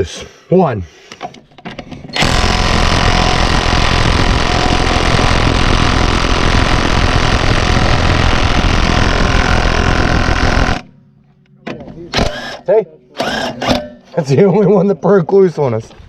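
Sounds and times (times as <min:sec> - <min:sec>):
impact wrench hammering: 0:02.1 - 0:10.9.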